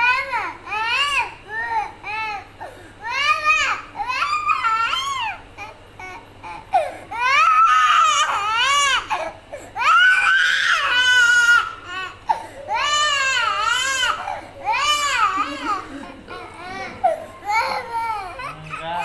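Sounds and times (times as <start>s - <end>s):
young child crying: 6.6s - 19.0s.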